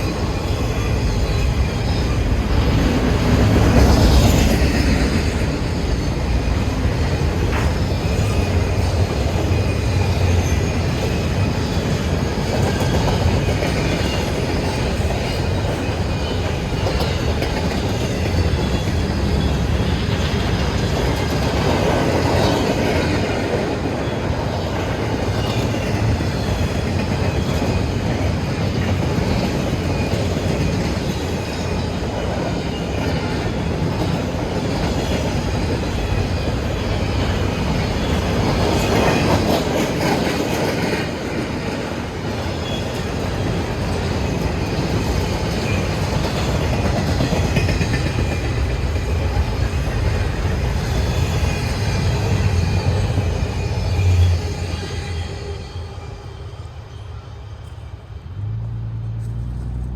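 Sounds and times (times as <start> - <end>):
faint high wheel squeal: 0.0 - 21.3, 42.4 - 48.5, 50.8 - 58.5
train wheels rumbling and clattering: 0.0 - 59.9.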